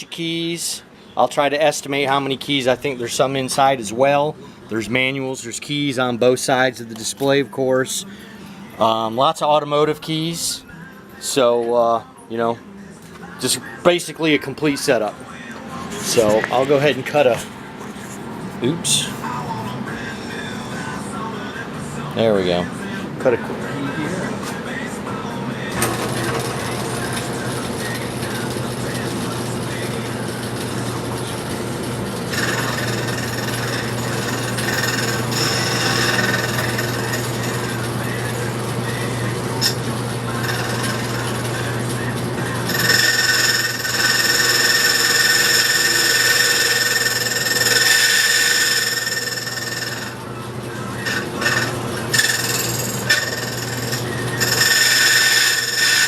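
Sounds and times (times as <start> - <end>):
motor humming: 25.7 - 56.0
cutting wheel grinding metal: 32.1 - 56.0.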